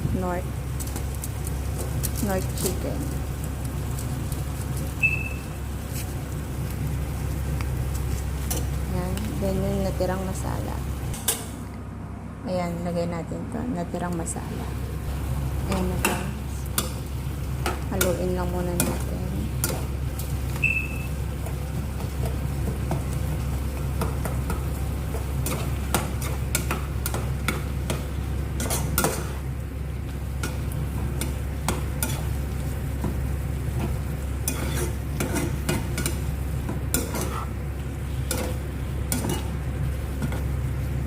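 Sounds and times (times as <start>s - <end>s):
low steady hum: 0.0s - 41.0s
utensil scraping a pan: 28.6s - 29.5s, 32.0s - 32.4s, 34.4s - 36.2s, 36.9s - 37.6s.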